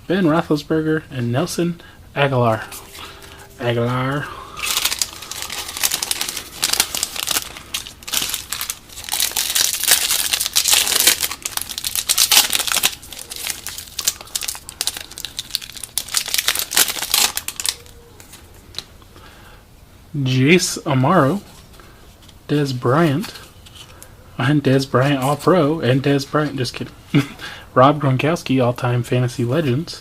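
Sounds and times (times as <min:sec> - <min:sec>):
plastic wrapper tearing and crinkling: 0:04.6 - 0:18.8.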